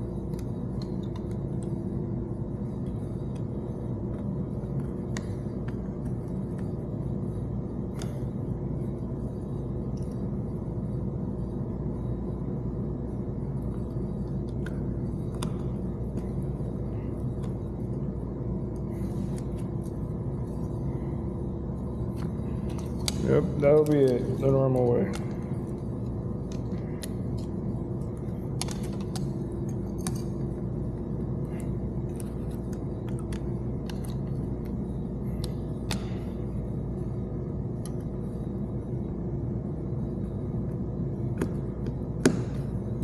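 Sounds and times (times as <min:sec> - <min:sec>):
parts clicking and tapping: 0:00.0 - 0:01.8, 0:02.8 - 0:06.8, 0:22.1 - 0:36.4.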